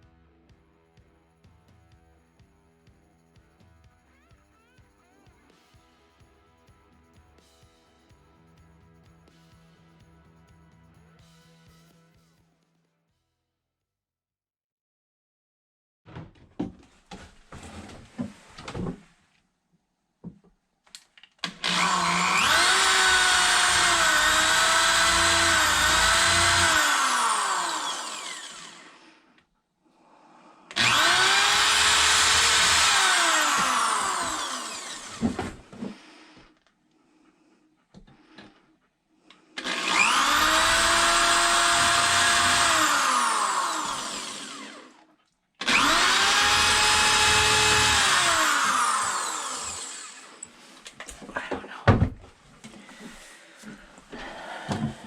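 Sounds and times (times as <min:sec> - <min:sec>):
electric power saw whining: 0:21.4 - 0:29.0, 0:30.7 - 0:36.0, 0:39.6 - 0:50.6.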